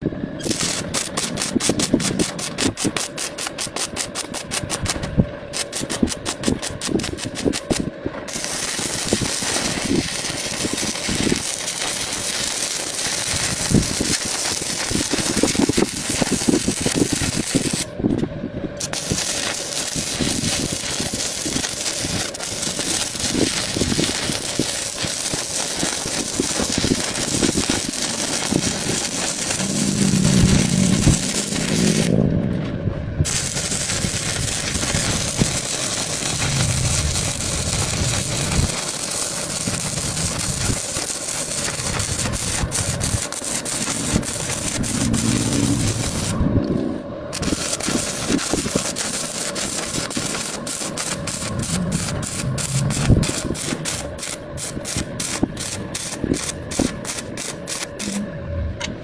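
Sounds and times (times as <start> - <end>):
arc welding crackling sizzle: 0.4 - 32.6, 33.2 - 58.3
low hum: 27.6 - 40.7, 43.7 - 47.4, 51.0 - 56.0, 57.9 - 59.0.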